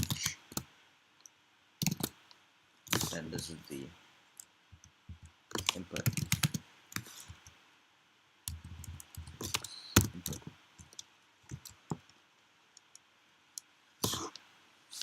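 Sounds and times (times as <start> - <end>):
computer keyboard typing: 0.0 - 0.6, 1.8 - 2.2, 5.2 - 7.5, 8.5 - 11.9.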